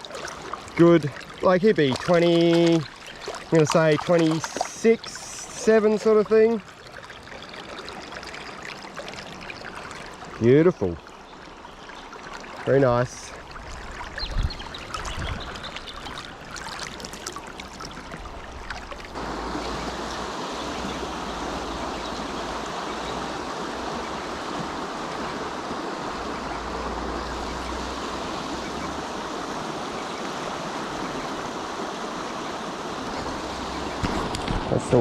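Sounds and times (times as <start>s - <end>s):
river water rushing: 0.0s - 35.0s
water splashing: 0.0s - 35.0s.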